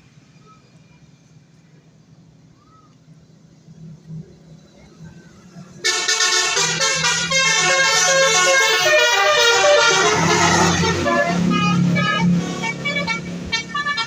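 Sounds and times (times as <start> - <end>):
multi-tone bus horn melody: 5.8 - 14.0.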